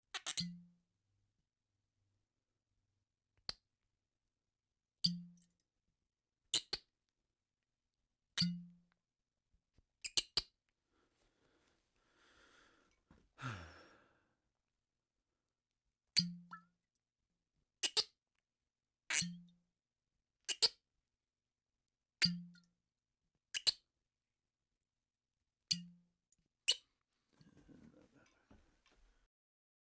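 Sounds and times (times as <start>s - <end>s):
corks popping out of bottles: 17.8s - 18.1s.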